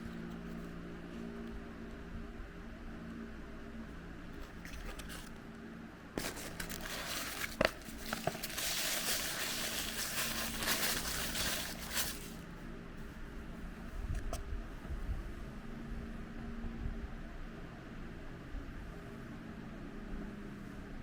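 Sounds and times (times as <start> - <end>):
plastic packaging crinkling: 4.4 - 5.4, 6.2 - 12.4.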